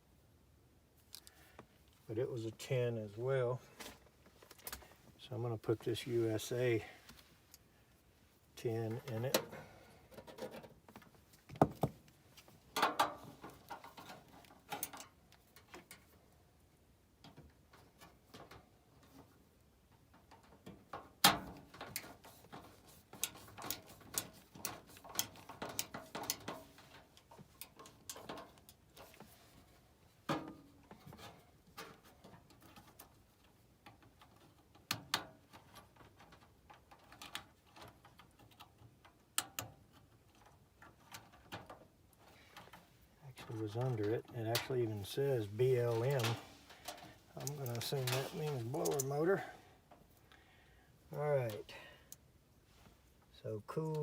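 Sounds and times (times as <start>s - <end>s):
wire handling noise: 8.6s - 16.2s, 17.2s - 50.4s.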